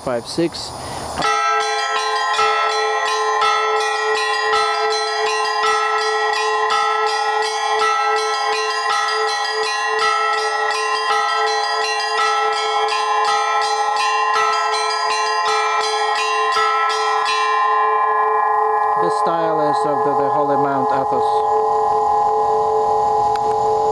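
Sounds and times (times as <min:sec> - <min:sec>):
hum of larger bells: 0:01.2 - 0:23.9
small high bells struck rapidly: 0:01.2 - 0:23.9.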